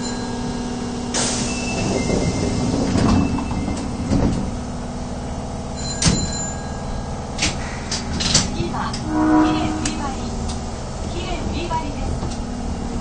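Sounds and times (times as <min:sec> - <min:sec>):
subway train rumble: 0:00.0 - 0:13.0
sharp clunks from train and track: 0:07.4 - 0:09.0.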